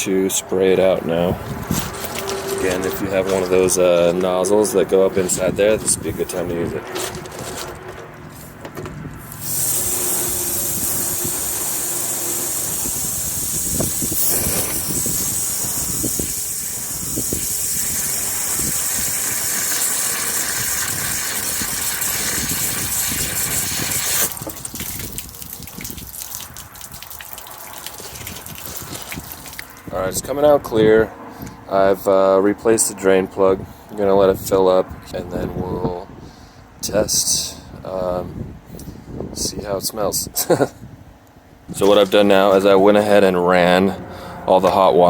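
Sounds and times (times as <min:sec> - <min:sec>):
hose spraying water: 0:09.2 - 0:29.8
water gushing out: 0:09.2 - 0:29.9.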